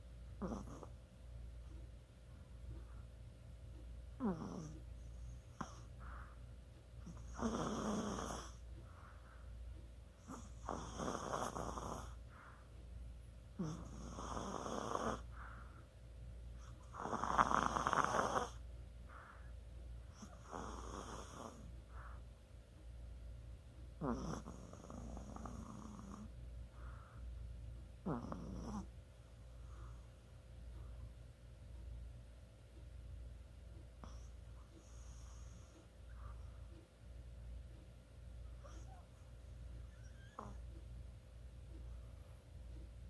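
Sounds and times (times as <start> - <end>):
small dog snoring: 0.4 - 1.0, 4.2 - 6.4, 7.0 - 9.4, 10.2 - 12.6, 13.6 - 15.7, 16.6 - 19.5, 20.1 - 22.2, 24.0 - 27.2, 28.0 - 29.0, 34.0 - 36.4, 38.6 - 40.8.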